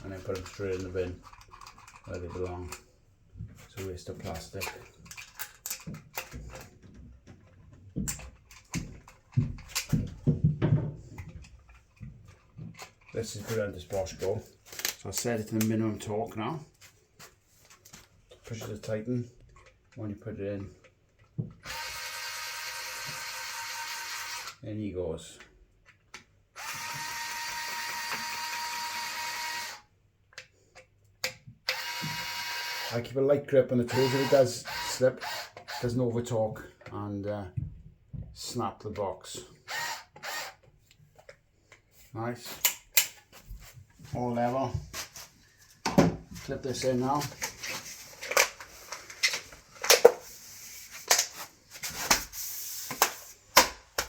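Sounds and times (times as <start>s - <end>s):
plastic parts clicking and snapping: 0.2s - 2.9s, 4.2s - 6.8s, 7.4s - 10.3s, 14.6s - 15.8s, 42.6s - 43.2s, 47.0s - 50.2s, 51.0s - 51.4s
cordless screwdriver driving screw: 21.6s - 24.6s, 26.6s - 29.8s, 31.7s - 33.0s, 33.9s - 35.8s, 39.7s - 40.6s.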